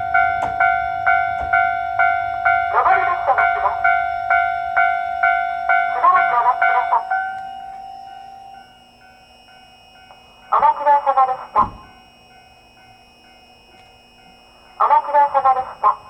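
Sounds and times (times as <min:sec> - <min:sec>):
electronic alarm bell: 0:00.0 - 0:16.0
recorded woman's announcement: 0:05.9 - 0:07.2, 0:14.8 - 0:16.0.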